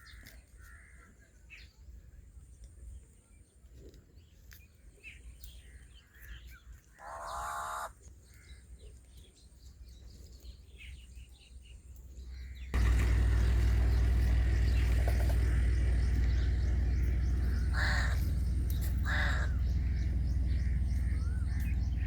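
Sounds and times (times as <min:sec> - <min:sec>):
small birds chirping: 0:02.6 - 0:22.0
harsh crow-like call: 0:07.0 - 0:07.9, 0:16.8 - 0:20.1
loud low-pitched humming noise: 0:12.8 - 0:22.0.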